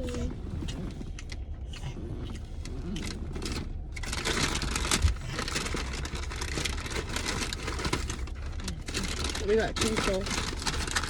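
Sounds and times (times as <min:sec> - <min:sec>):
steady low hum: 0:00.0 - 0:11.0
paper bags rustling and crinkling: 0:03.4 - 0:11.0.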